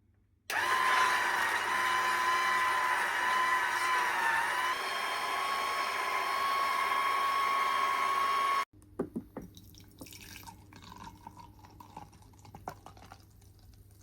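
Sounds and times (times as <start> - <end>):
electric juicer motor whine: 0.5 - 8.7
liquid sounds: 9.5 - 14.0.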